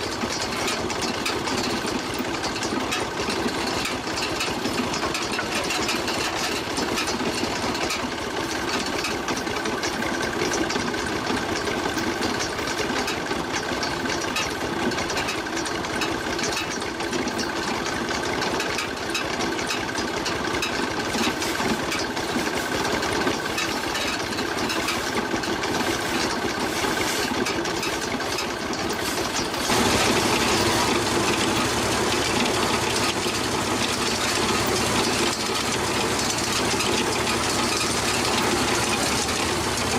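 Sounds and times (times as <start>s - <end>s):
motor running with rapid clatter: 0.0s - 39.9s.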